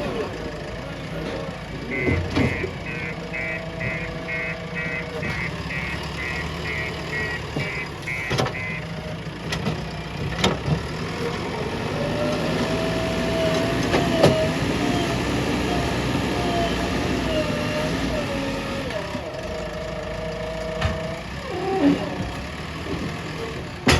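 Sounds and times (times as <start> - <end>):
diesel engine running: 0.0 - 23.9
pulsed beeping alarm: 1.9 - 9.1.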